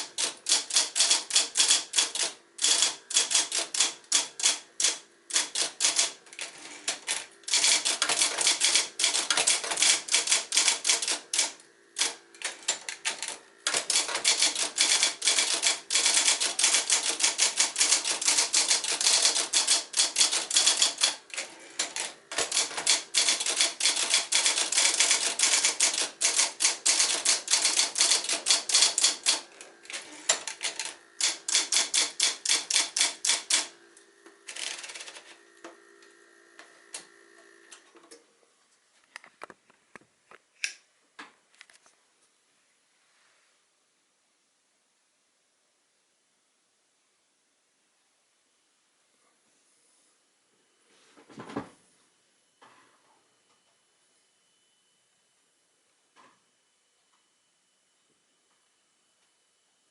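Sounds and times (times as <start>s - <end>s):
faint steady hum: 0.0s - 59.9s
typewriter keys clicking: 0.1s - 33.7s.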